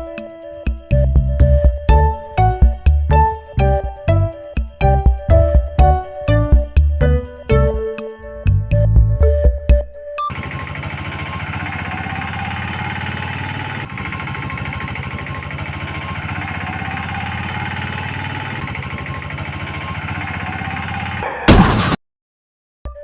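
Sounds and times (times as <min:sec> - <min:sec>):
engine throbbing: 0:00.0 - 0:21.2
loud engine burst: 0:10.3 - 0:22.0.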